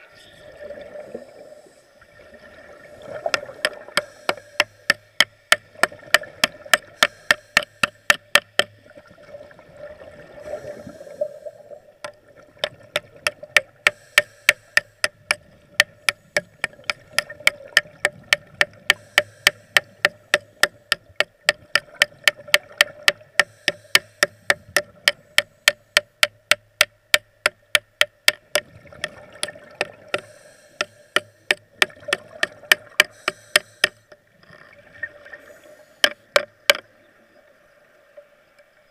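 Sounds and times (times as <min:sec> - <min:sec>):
watery hiss: 0:02.8 - 0:05.6, 0:06.8 - 0:08.6, 0:10.3 - 0:11.9, 0:13.8 - 0:15.3, 0:18.8 - 0:21.0, 0:23.4 - 0:26.0, 0:30.1 - 0:31.7, 0:32.9 - 0:34.2, 0:35.3 - 0:36.4
underwater welding clicking: 0:03.2 - 0:08.8, 0:12.0 - 0:34.2.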